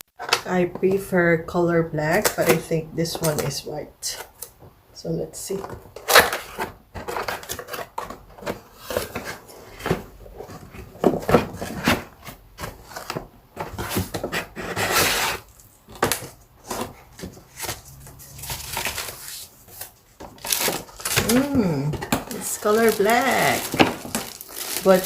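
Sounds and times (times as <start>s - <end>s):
packaging rustling: 5.7s - 25.0s.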